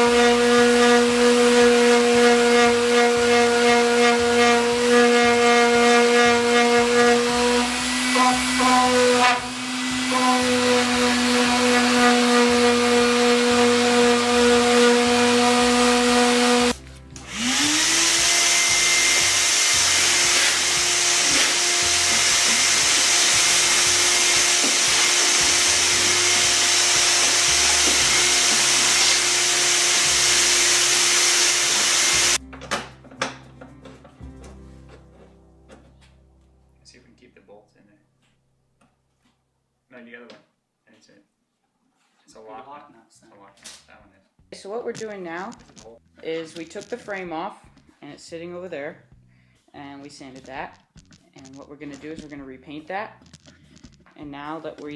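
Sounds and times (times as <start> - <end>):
electric power sander running: 0.0 - 32.4.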